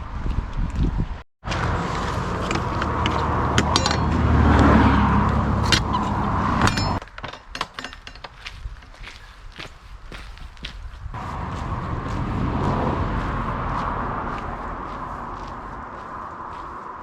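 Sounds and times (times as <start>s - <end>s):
motor vehicle passing: 1.4s - 7.0s, 11.2s - 17.0s
metallic clinks: 2.4s - 4.3s, 5.6s - 8.4s
footsteps: 8.0s - 17.0s.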